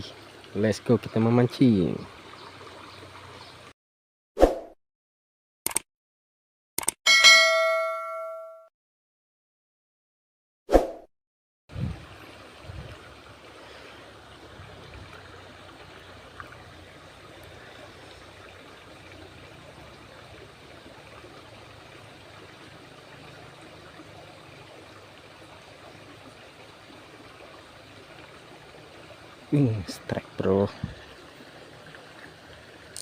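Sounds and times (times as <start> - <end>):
flowing water rushing: 0.0 - 3.7, 11.7 - 33.0.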